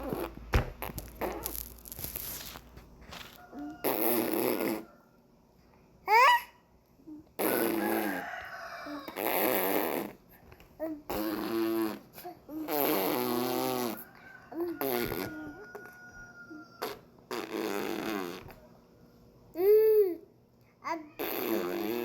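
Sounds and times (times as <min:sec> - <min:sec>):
baby vocalising: 0:01.1 - 0:01.7, 0:03.5 - 0:04.9, 0:06.0 - 0:08.2, 0:08.8 - 0:10.2, 0:10.8 - 0:18.6, 0:20.8 - 0:22.0
baby squealing: 0:01.2 - 0:01.7.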